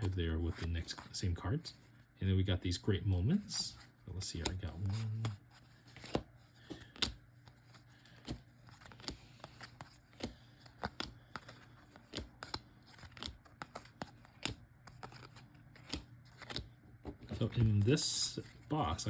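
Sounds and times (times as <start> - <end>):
trading cards clicking and tapping: 4.2 - 18.5.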